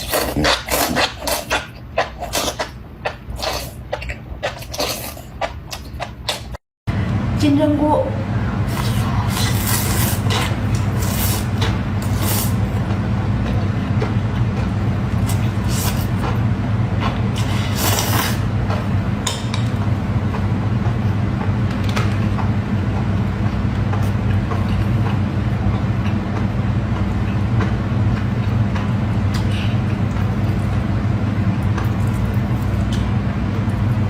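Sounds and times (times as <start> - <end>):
crisp wet chewing: 0.0 - 6.6
steady low hum: 0.0 - 34.0.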